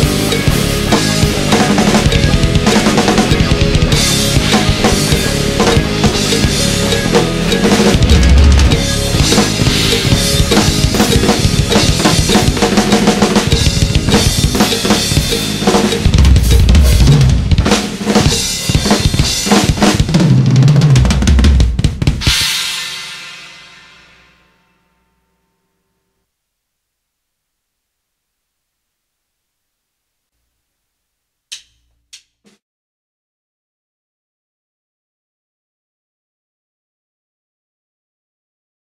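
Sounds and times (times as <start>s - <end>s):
recorded backing track: 0.0s - 23.5s
drum kit played hard: 0.0s - 24.7s.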